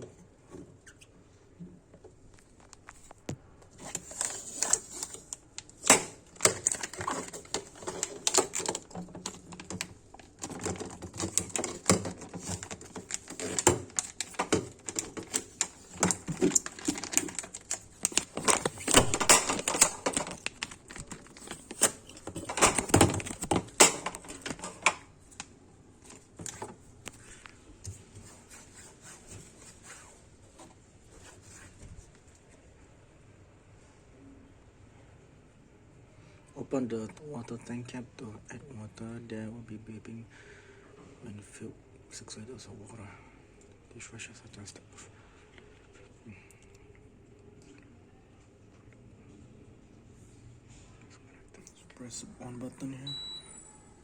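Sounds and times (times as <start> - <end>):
hands handling plastic parts: 2.3 - 28.1
papers being moved: 2.4 - 32.2.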